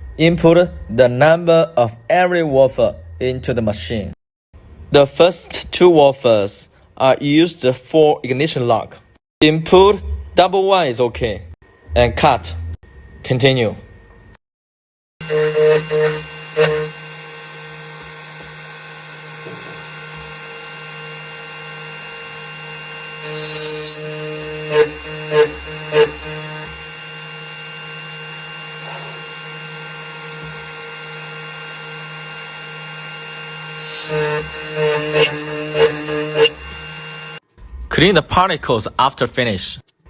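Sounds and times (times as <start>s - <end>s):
key-cutting machine milling: 15.2s - 37.4s.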